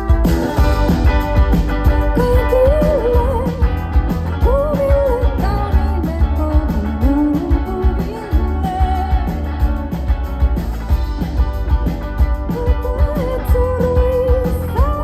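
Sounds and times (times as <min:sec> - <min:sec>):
rock band playing: 0:00.0 - 0:15.0
person singing: 0:01.9 - 0:09.9, 0:12.5 - 0:15.0.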